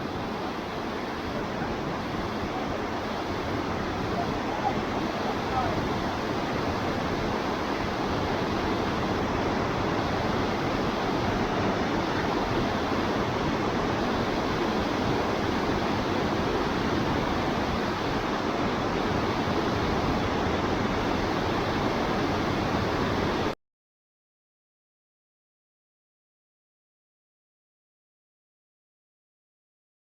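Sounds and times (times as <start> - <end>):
waterfall rushing: 0.0 - 23.5.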